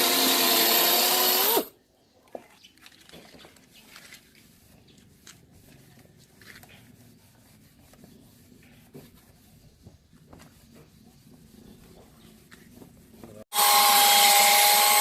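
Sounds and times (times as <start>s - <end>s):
rubbing on plastic lens: 2.9s - 13.4s.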